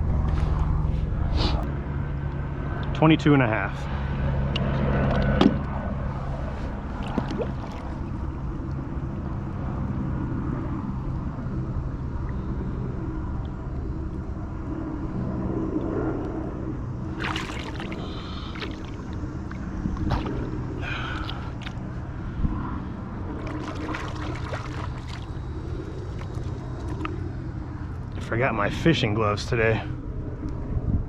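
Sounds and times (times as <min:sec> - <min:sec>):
low engine hum: 0:00.0 - 0:31.0
wind noise on microphone: 0:04.7 - 0:28.2, 0:30.1 - 0:31.0.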